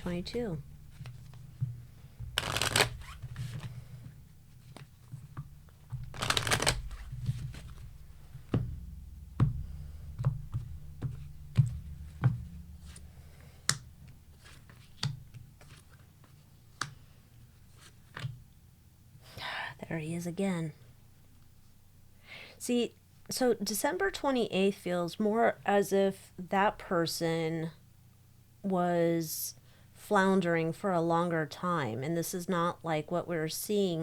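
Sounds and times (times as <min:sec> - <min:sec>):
cards shuffling: 0:00.0 - 0:08.7, 0:11.0 - 0:17.0.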